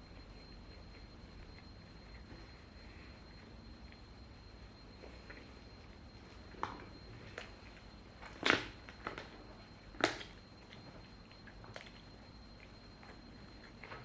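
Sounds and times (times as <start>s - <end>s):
person chewing food: 0.1s - 14.0s
mouth clicks and crunches: 6.5s - 14.0s.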